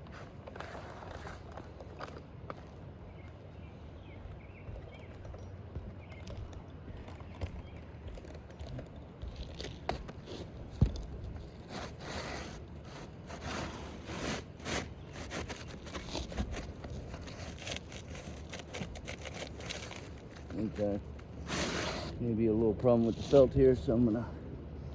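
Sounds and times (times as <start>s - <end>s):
shingles scraping and rustling: 8.3s - 23.9s.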